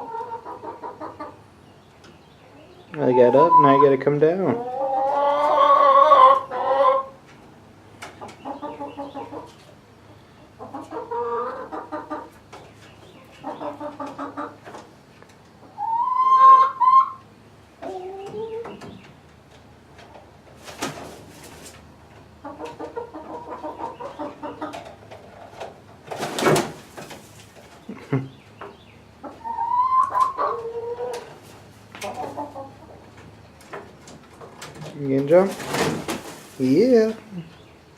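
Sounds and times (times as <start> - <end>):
chickens clucking: 0.0 - 37.9
chicken squawk: 3.0 - 7.2, 15.6 - 18.6, 29.2 - 31.3
rustles: 19.9 - 21.9, 33.1 - 37.8.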